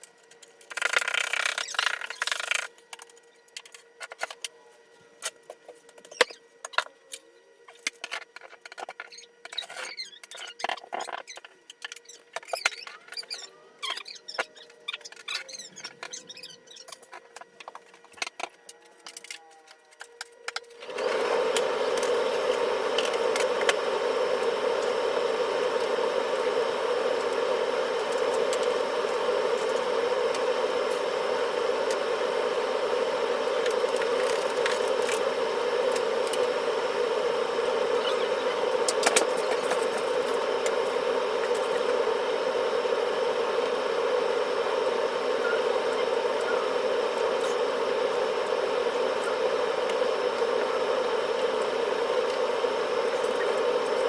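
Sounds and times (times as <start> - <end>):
loud steady whirring: 17.0 - 54.0.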